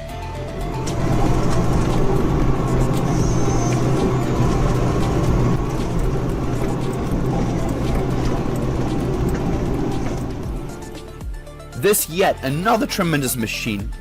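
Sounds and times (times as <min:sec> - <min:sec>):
diesel engine running under load: 0:00.0 - 0:11.2
knocks and clicks: 0:00.6 - 0:11.2.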